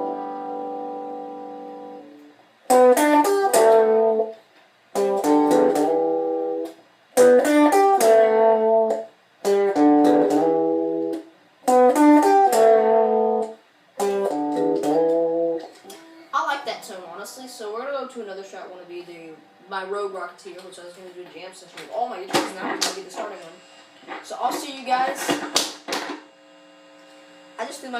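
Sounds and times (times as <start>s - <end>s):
electric guitar chords: 0.0s - 16.3s.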